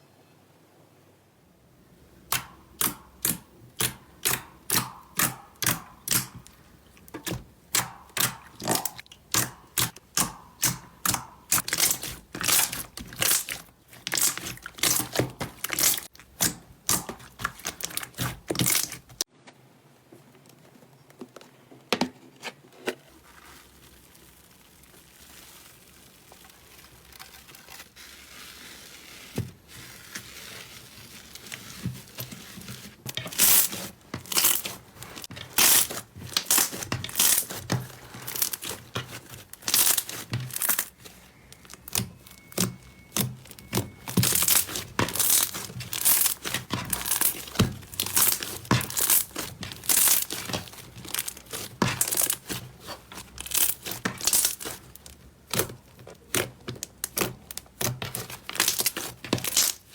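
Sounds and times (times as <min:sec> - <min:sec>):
slime rustling: 0:01.8 - 0:19.3, 0:22.4 - 0:59.9
slime crackling pops: 0:07.7 - 0:19.0.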